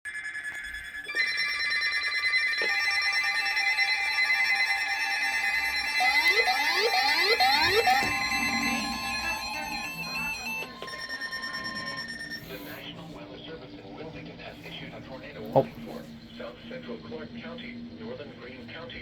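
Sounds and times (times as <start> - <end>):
piercing alarm tones: 0.1 - 13.1
two-tone alert sound: 1.0 - 12.8
rising chirps: 2.7 - 12.8.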